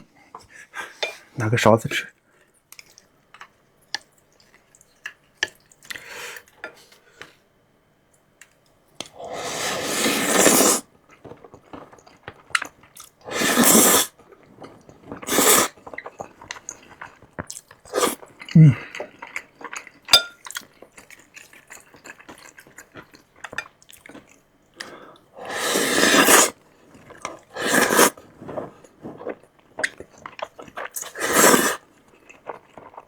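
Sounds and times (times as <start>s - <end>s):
soft chewing: 2.4s - 7.5s, 8.1s - 33.0s
loud noodle slurps: 9.1s - 10.9s, 13.2s - 17.2s, 17.9s - 19.0s, 25.4s - 31.9s.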